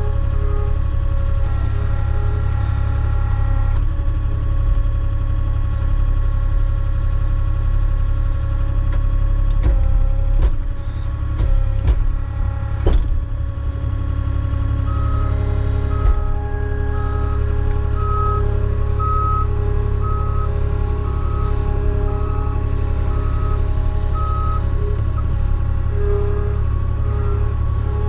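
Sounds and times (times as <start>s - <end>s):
diesel engine running with whine: 0.0s - 28.0s
machine knocks and clanks: 9.5s - 13.5s, 15.9s - 16.4s.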